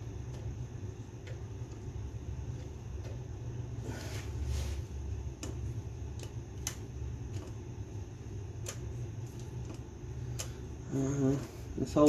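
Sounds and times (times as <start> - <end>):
steady low hum: 0.0 - 12.0
tools clicking and tapping: 5.3 - 7.6.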